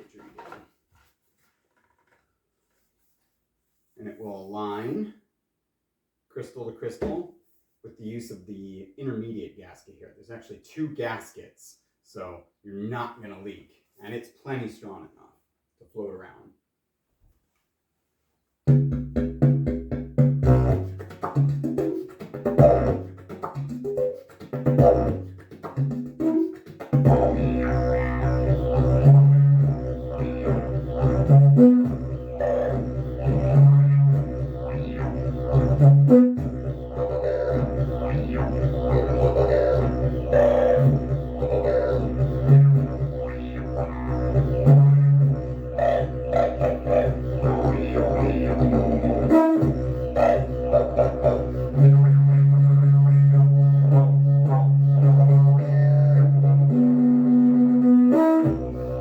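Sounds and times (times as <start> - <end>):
higher didgeridoo toots: 18.7 - 59.0
didgeridoo drone: 22.4 - 23.7, 24.5 - 59.0.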